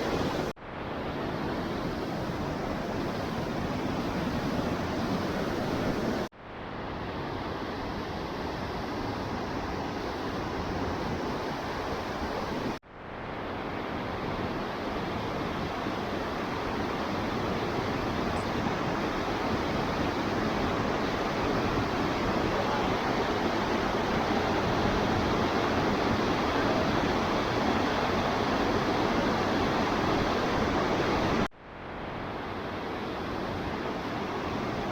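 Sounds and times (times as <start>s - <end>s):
waterfall rushing water: 0.0s - 0.5s, 2.0s - 6.3s.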